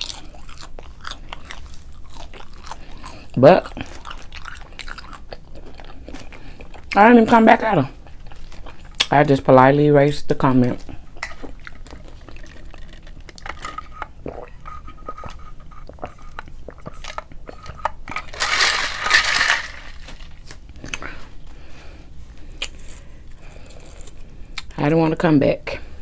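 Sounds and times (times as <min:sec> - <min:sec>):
person chewing food: 0:00.0 - 0:09.2, 0:10.6 - 0:24.7
loud crunch or rustle: 0:18.1 - 0:20.6.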